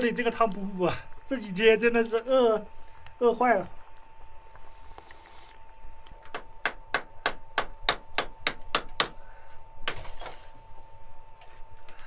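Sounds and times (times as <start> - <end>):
sharp knocks: 6.3 - 9.2.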